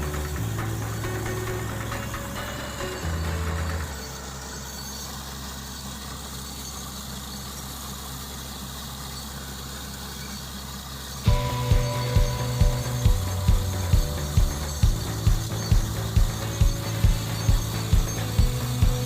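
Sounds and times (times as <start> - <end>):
drilling rig engine idling: 0.0 - 19.0
steady mechanical whine: 0.0 - 19.0
drilling rig heavy knocking: 11.3 - 19.0.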